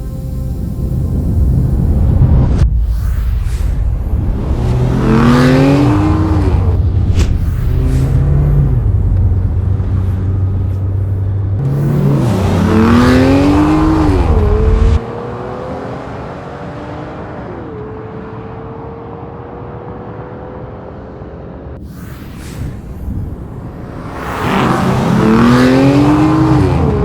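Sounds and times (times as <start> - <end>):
steady tone rising in pitch: 0.0 - 15.1, 21.8 - 27.0
car engine revving: 3.8 - 21.8, 23.4 - 27.0.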